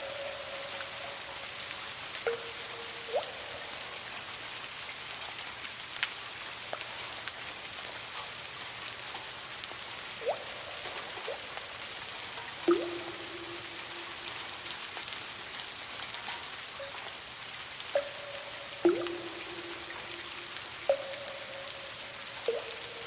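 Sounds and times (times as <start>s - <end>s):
water drops plinking: 0.0s - 4.2s, 10.2s - 23.0s
soft rain hissing: 0.0s - 23.0s.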